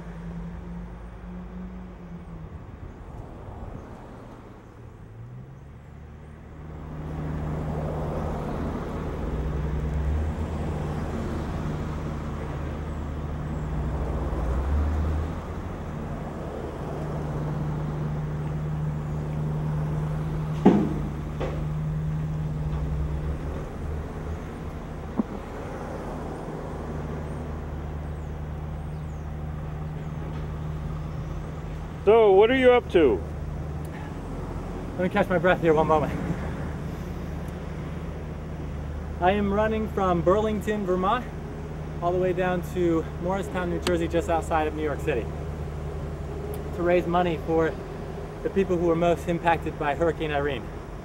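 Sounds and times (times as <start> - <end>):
vehicle engine hum with road noise: 0.0 - 51.0
sharp knock: 20.6 - 21.6.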